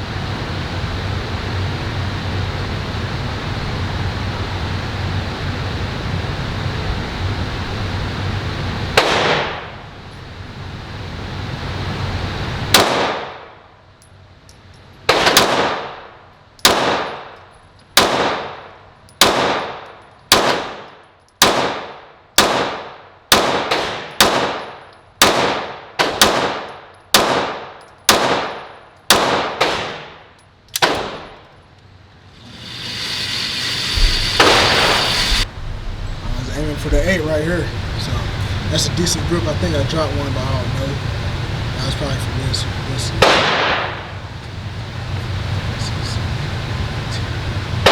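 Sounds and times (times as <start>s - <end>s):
handgun shots echoing indoors: 15.1s - 30.2s, 30.8s - 31.4s, 43.2s - 44.0s.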